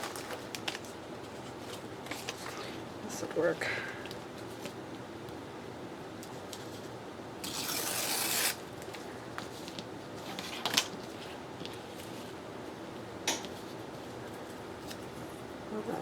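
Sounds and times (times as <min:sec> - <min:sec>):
paper rasping and rubbing: 0:07.5 - 0:08.6.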